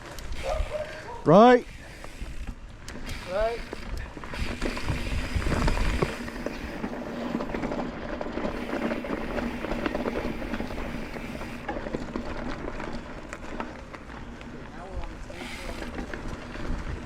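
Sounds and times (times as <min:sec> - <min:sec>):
bike rattling: 0:00.0 - 0:17.0
bike tyres crunching on dirt: 0:00.0 - 0:17.0
wind buffeting microphone: 0:03.8 - 0:07.8, 0:15.8 - 0:17.0.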